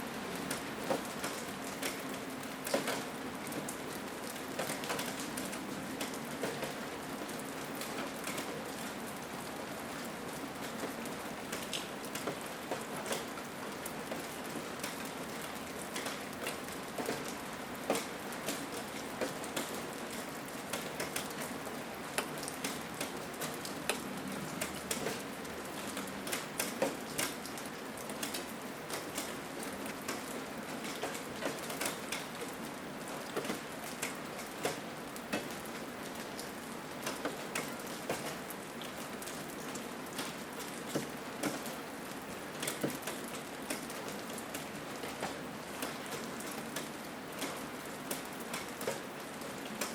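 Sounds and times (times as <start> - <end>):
steady rain: 0.0 - 49.9.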